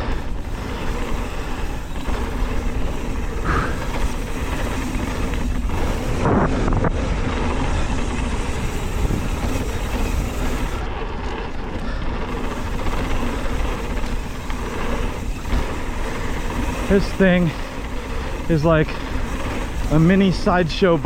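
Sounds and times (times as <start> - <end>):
wind rush on microphone: 0.0 - 11.0
bike tyre and frame rattle: 0.0 - 21.0.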